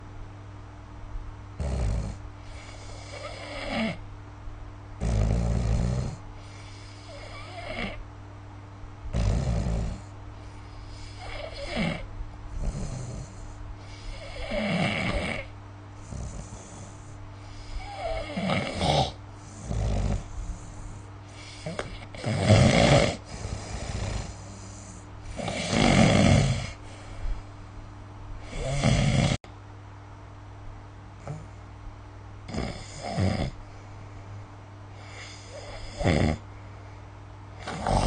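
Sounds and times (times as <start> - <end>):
steady low hum: 0.0 - 38.0
person snoring: 1.6 - 4.0, 5.0 - 8.0, 9.1 - 27.3, 28.4 - 29.4, 31.2 - 31.5, 32.5 - 33.6, 35.0 - 36.4, 37.6 - 38.0.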